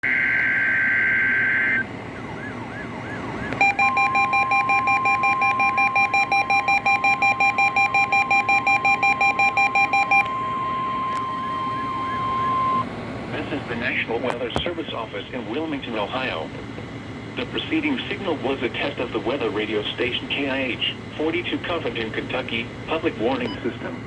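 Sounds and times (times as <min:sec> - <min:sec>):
screeching data tones: 0:00.0 - 0:01.9, 0:03.6 - 0:12.8
electronic alarm beeping: 0:03.5 - 0:12.8
steady warning alarm tone: 0:03.5 - 0:12.9.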